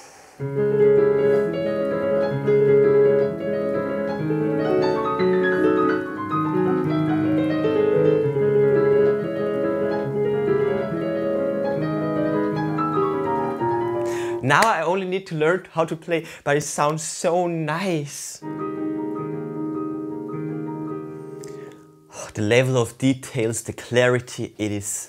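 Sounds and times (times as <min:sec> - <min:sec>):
piano music through speakers: 0:00.4 - 0:14.7, 0:18.4 - 0:22.2.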